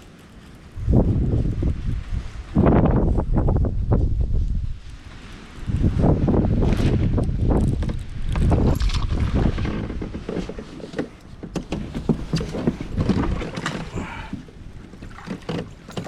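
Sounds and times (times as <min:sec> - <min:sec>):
wind buffeting microphone: 0:00.6 - 0:15.9
water slapping against kayak hull: 0:06.7 - 0:16.0.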